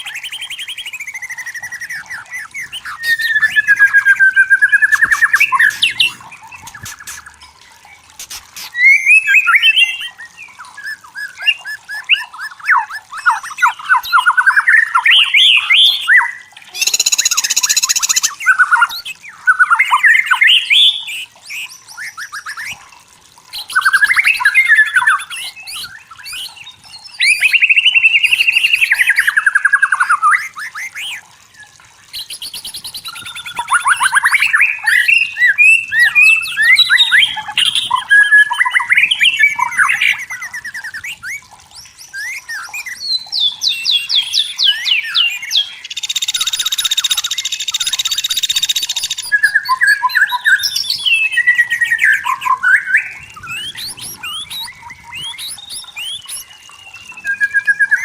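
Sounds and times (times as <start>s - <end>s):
songbird whistling and trilling: 0.0s - 7.3s, 8.2s - 22.8s, 23.6s - 58.0s.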